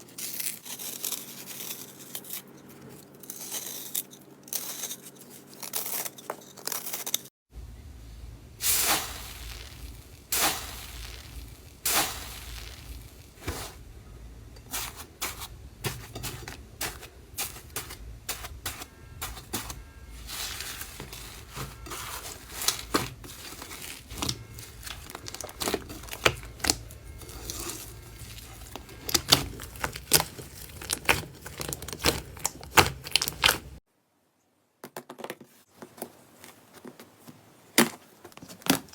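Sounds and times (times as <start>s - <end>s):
faint low hum: 7.5s - 32.6s
slime crackling and popping: 8.6s - 13.7s, 20.2s - 33.8s.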